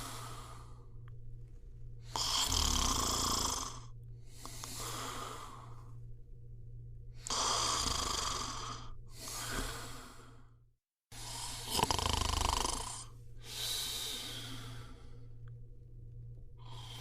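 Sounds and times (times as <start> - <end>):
person snoring: 2.1 - 5.8, 7.2 - 10.5, 11.2 - 15.0.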